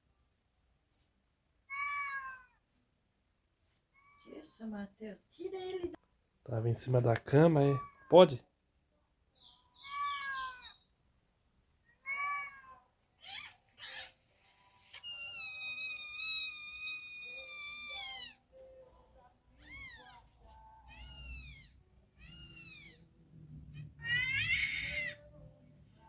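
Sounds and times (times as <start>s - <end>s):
cat meowing: 1.7s - 2.6s, 7.6s - 8.1s, 9.7s - 10.9s, 11.9s - 14.2s, 14.9s - 18.4s, 19.6s - 23.1s, 23.7s - 25.3s.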